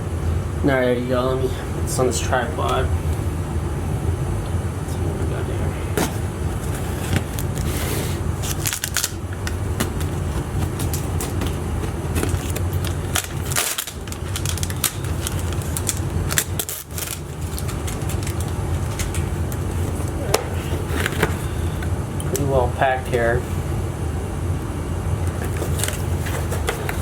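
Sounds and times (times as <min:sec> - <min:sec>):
steady low hum: 0:00.0 - 0:27.0
cardboard box being opened: 0:06.0 - 0:21.5, 0:25.4 - 0:27.0
packing material rustling: 0:06.0 - 0:21.8, 0:25.3 - 0:27.0.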